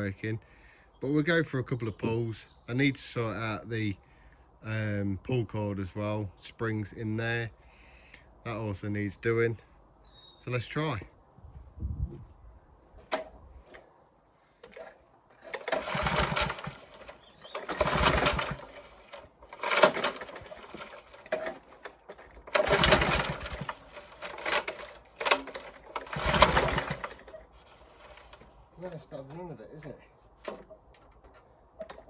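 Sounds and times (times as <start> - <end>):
lawnmower engine pull-start rattling: 13.0 - 13.9, 14.6 - 32.0.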